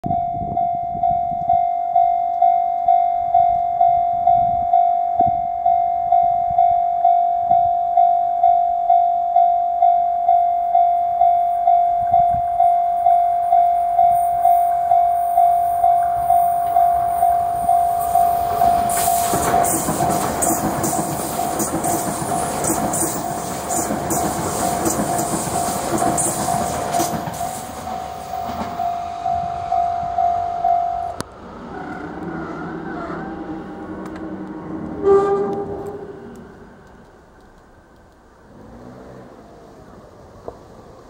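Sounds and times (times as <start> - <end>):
level crossing bell ringing: 0.1 - 19.4
train rushing past: 13.7 - 41.0.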